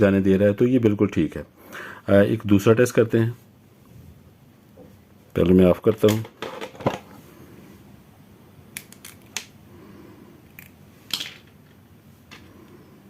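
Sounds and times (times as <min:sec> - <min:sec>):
hands clicking wires and clips: 0:08.8 - 0:09.6.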